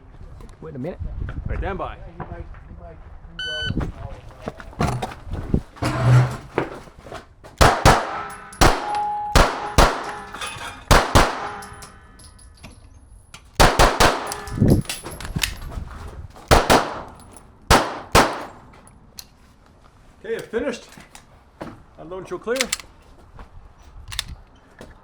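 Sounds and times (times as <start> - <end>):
pistol shots: 7.6 - 11.9, 13.6 - 14.8, 16.5 - 18.7
metallic ring: 8.1 - 13.0, 14.2 - 15.4.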